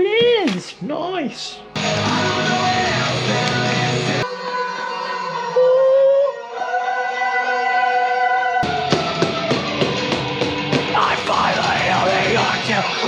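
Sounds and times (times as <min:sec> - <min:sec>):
guitar rock music: 0:01.8 - 0:04.2, 0:08.7 - 0:13.0.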